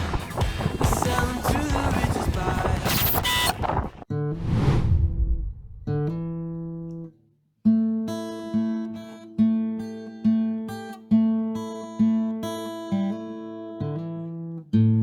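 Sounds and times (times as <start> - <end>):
acoustic guitar chords: 0.0 - 4.4, 5.7 - 15.0.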